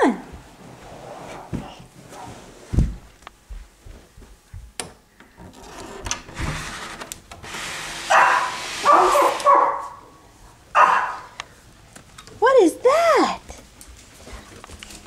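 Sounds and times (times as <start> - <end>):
dog barking: 8.1 - 10.1, 10.7 - 11.4.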